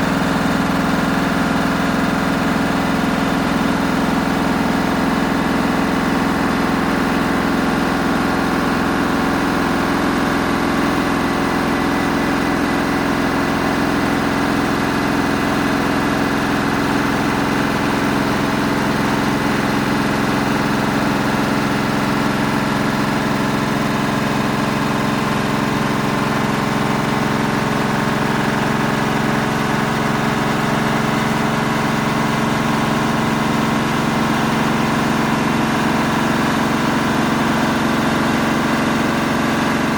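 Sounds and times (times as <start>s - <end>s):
washing machine running: 0.0s - 39.9s.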